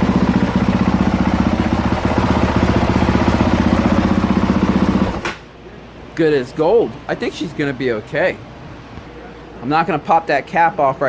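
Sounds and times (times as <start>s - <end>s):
motorcycle engine idling: 0.0s - 5.2s.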